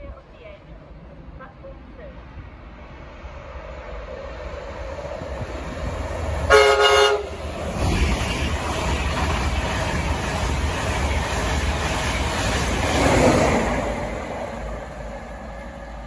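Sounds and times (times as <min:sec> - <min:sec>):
train running on rails: 0:00.0 - 0:16.0
train horn blast: 0:06.5 - 0:07.4.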